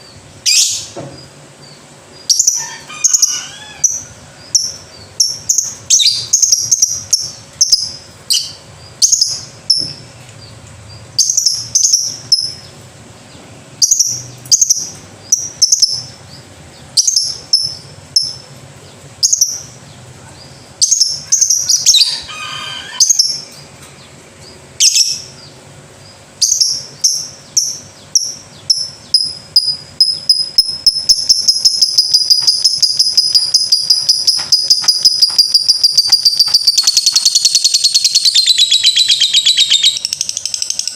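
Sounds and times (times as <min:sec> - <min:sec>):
bird shrill chirps: 0:20.5 - 0:23.5, 0:26.4 - 0:40.9.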